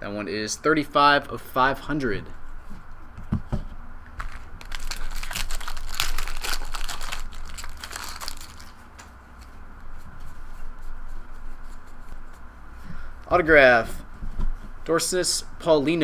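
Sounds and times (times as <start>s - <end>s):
wrapper crinkling and rustling: 4.2s - 8.9s.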